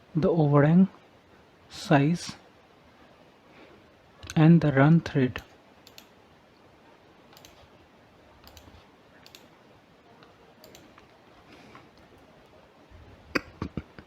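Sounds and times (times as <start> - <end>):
computer keys clicking: 5.4 - 6.2, 7.3 - 7.6, 8.4 - 9.5, 10.2 - 11.2.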